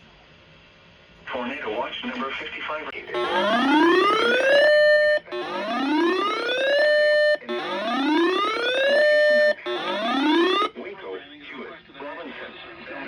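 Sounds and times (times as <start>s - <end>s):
electronic rising alert tone: 3.2s - 10.7s.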